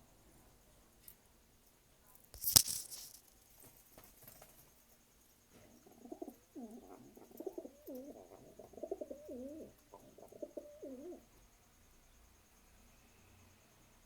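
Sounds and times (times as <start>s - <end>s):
pigeon cooing: 5.5s - 11.3s.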